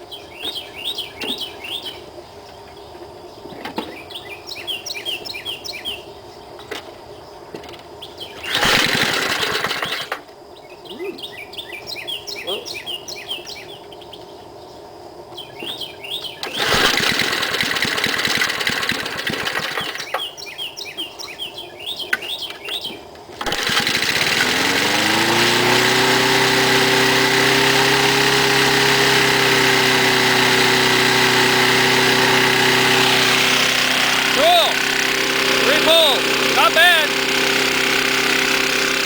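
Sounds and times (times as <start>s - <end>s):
birds chirping: 0.0s - 8.6s, 10.5s - 16.5s, 19.8s - 23.1s, 30.3s - 38.8s
lawn mower engine starting: 8.3s - 10.3s, 16.4s - 20.3s, 23.3s - 39.0s.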